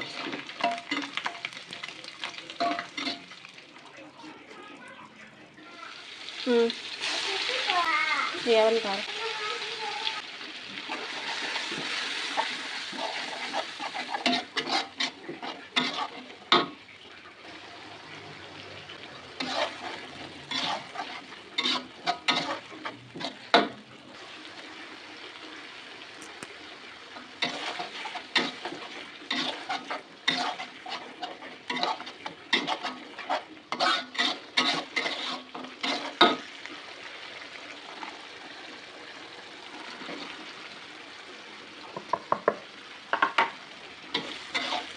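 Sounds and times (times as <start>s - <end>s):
spatula scraping a pan: 0.0s - 3.6s, 6.8s - 24.9s, 26.2s - 36.6s, 39.6s - 40.5s, 44.1s - 44.9s
food sizzling in a pan: 0.0s - 44.9s.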